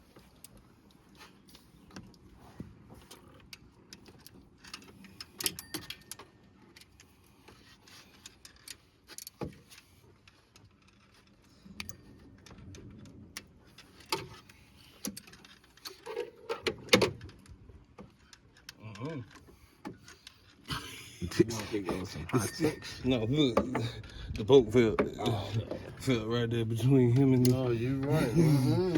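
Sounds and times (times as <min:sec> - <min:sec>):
metal tools clinking and knocking: 0:21.3 - 0:26.2.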